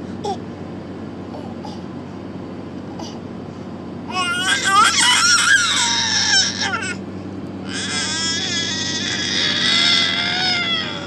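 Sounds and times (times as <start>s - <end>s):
baby crying: 4.1s - 7.0s, 7.6s - 11.0s.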